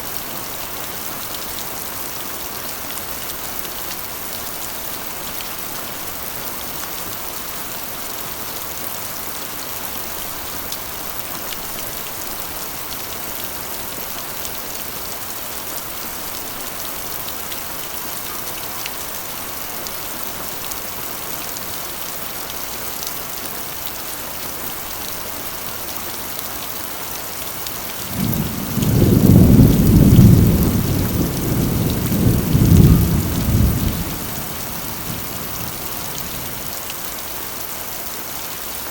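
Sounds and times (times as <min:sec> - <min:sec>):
heavy rain on a metal roof: 0:00.0 - 0:38.9
thunder rumbling: 0:28.1 - 0:36.7.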